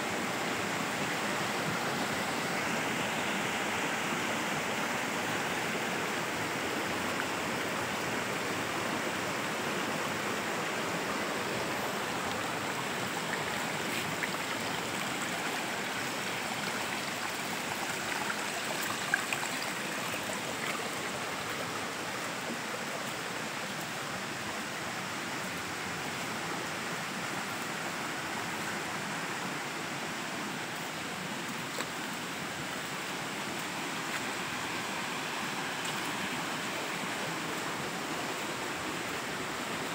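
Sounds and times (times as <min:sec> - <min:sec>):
rushing water: 0:00.0 - 0:39.9.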